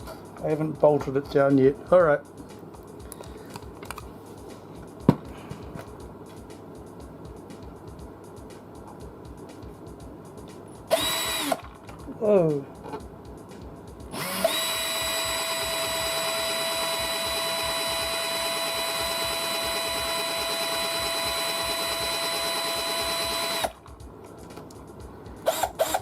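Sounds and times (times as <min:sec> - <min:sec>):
drill high-pitched whine: 0:10.9 - 0:11.7, 0:14.1 - 0:23.8, 0:25.4 - 0:26.0.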